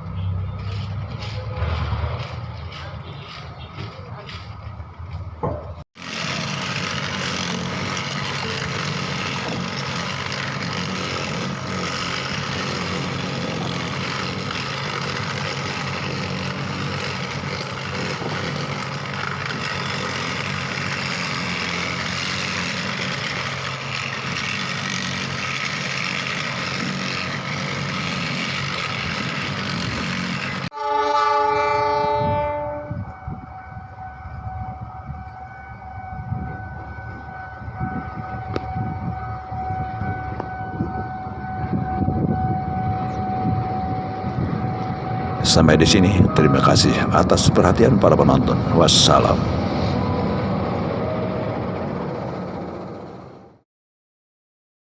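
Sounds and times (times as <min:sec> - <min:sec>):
train rumbling and rattling: 0:00.0 - 0:53.6
train horn: 0:30.7 - 0:46.8.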